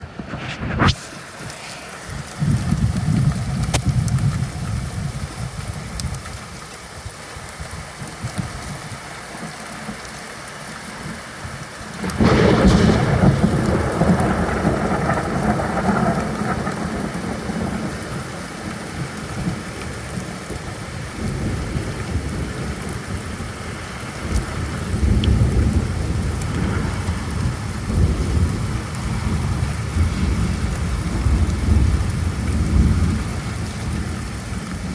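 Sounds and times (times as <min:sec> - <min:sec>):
steady rainfall: 0:00.0 - 0:34.9
thunder rumbling: 0:11.9 - 0:34.9
loud thunder crash: 0:12.0 - 0:17.8.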